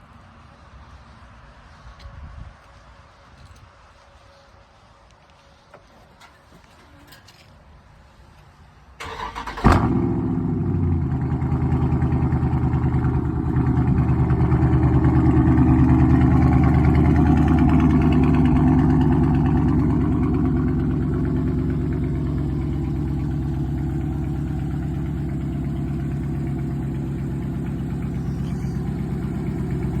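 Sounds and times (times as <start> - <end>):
car engine starting and idling: 9.0 - 30.0.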